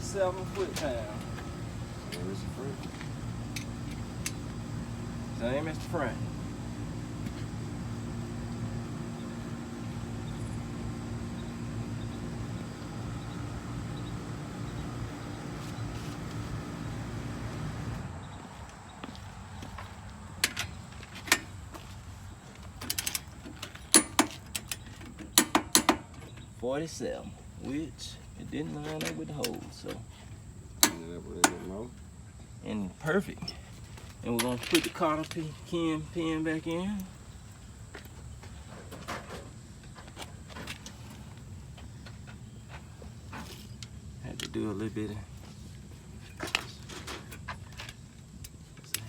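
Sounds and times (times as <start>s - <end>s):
steady low hum: 0.0s - 46.9s
small metal parts clicking: 22.8s - 25.9s.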